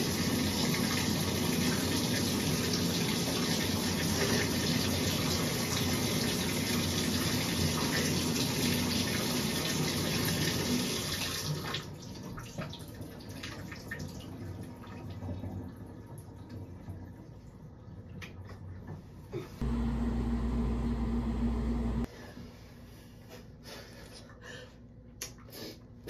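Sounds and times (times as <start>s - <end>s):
water running from a tap: 0.0s - 17.5s.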